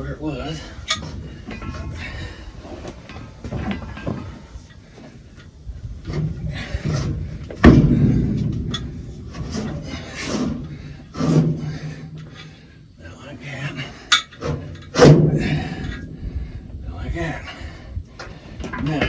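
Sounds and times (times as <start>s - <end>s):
metal tools knocking and scraping: 6.1s - 12.6s, 14.0s - 16.1s.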